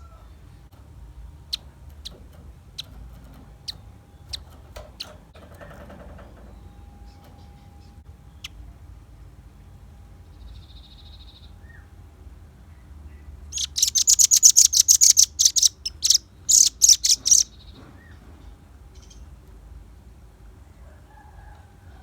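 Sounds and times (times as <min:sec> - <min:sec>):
faint bird trill: 0:01.5 - 0:08.6, 0:13.1 - 0:18.2.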